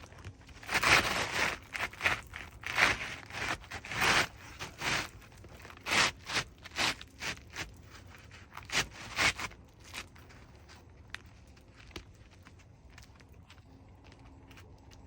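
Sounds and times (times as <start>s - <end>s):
shingle scraping on shingle: 0.6s - 10.1s.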